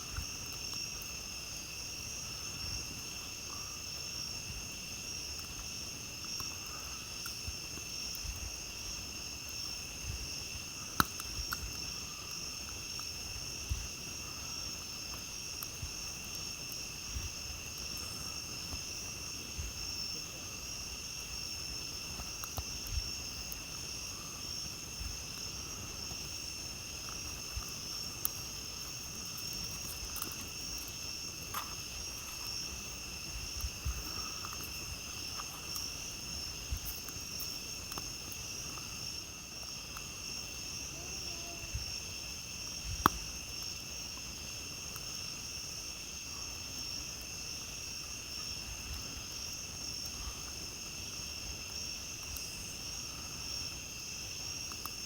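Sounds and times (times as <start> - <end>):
campfire crackling and popping: 0.0 - 55.0
crickets and night insects: 0.0 - 55.0.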